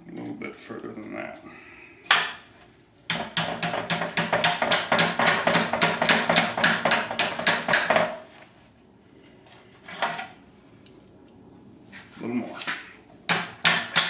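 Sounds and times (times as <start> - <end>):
hammer striking steel bars: 3.1 - 8.1, 13.3 - 14.0.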